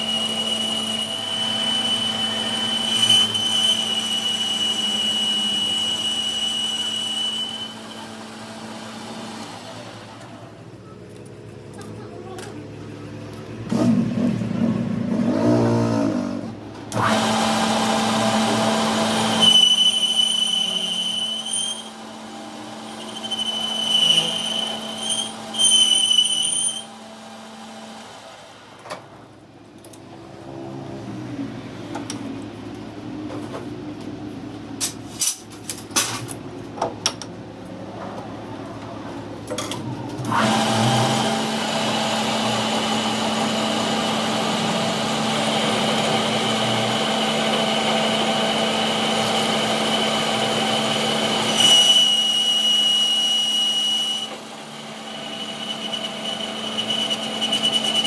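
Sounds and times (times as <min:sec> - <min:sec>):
power tool motor whine: 0:00.0 - 0:10.4, 0:16.9 - 0:27.3, 0:40.2 - 0:58.0.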